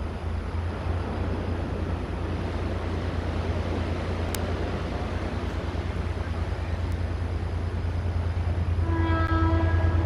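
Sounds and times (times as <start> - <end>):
wind buffeting microphone: 0.0 - 9.2
faint click: 4.3 - 4.5.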